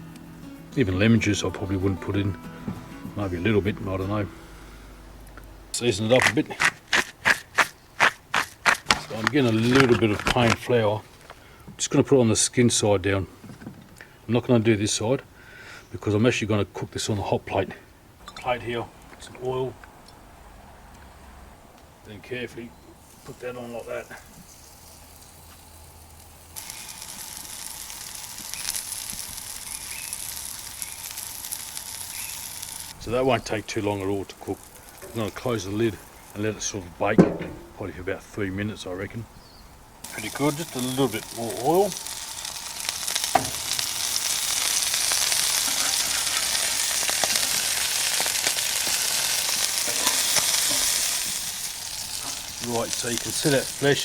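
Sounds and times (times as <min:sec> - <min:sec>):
fish sizzling in hot oil: 0:06.2 - 0:10.6, 0:23.0 - 0:33.0, 0:33.6 - 0:36.5, 0:40.0 - 0:54.0.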